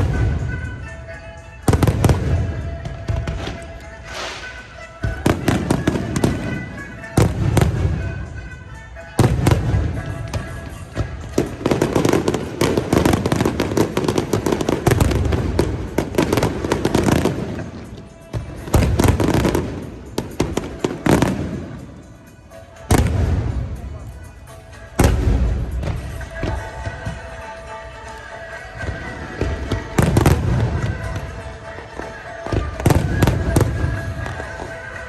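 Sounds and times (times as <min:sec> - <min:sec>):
fireworks bangs and crackling: 0:00.0 - 0:35.0
heavy fireworks booms: 0:01.6 - 0:08.5, 0:09.2 - 0:21.9, 0:22.9 - 0:23.8, 0:25.0 - 0:27.2, 0:28.8 - 0:31.4, 0:32.0 - 0:35.0.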